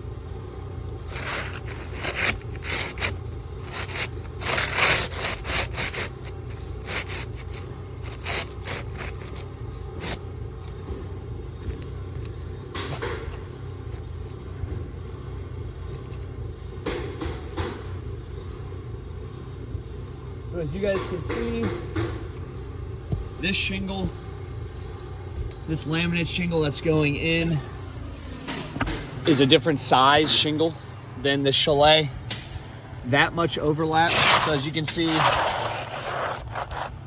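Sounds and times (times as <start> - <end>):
roof shingles scraping: 1.0 - 10.8, 33.5 - 37.0.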